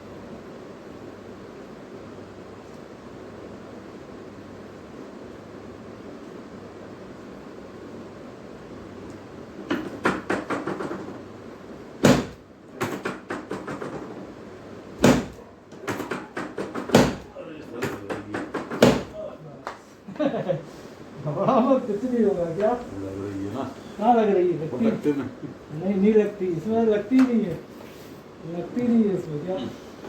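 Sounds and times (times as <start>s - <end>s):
treatment table heavy thumps: 9.6s - 11.2s, 12.0s - 14.2s, 15.0s - 19.2s
quick clicks and knocks: 9.7s - 11.2s, 12.0s - 14.3s, 15.0s - 19.1s.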